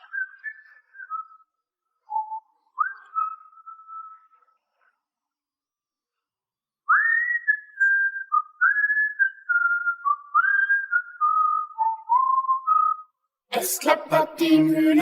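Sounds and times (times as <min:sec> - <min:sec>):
person whistling a melody: 0:06.9 - 0:13.2.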